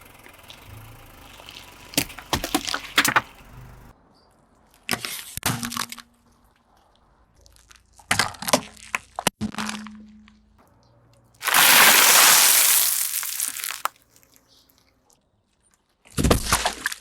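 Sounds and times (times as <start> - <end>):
objects cracking under car tyre: 0.0 - 3.9, 11.4 - 17.0.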